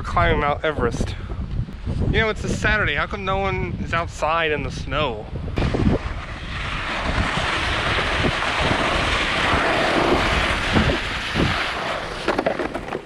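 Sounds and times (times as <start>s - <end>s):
wind rumbling on microphone: 0.0s - 13.0s
sled scraping over crusted snow: 6.1s - 13.0s.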